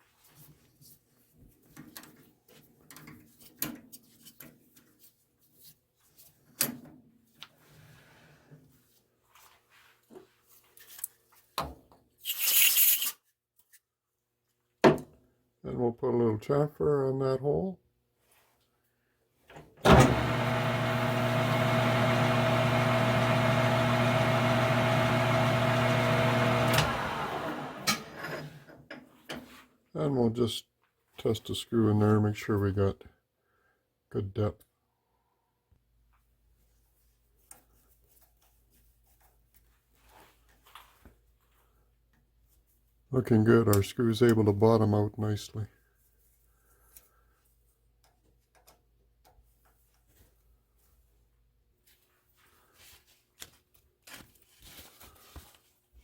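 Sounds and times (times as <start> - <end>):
metal lathe running: 19.9 - 28.5.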